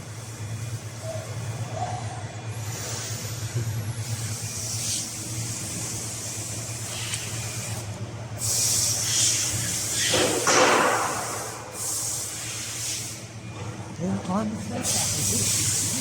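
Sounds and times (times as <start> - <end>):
laser welding machine humming: 0.0 - 16.0
welding gas hissing: 4.0 - 13.2, 14.8 - 16.0.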